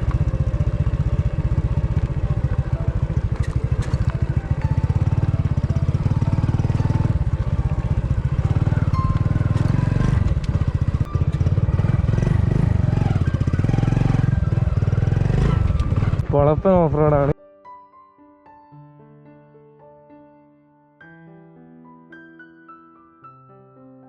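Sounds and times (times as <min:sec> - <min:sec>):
motorcycle engine under load: 0:00.0 - 0:17.4.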